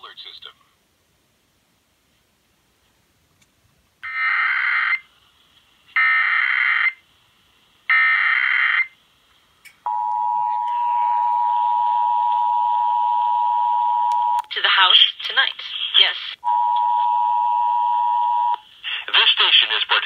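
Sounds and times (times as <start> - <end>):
two-tone attention signal: 9.9 - 14.4.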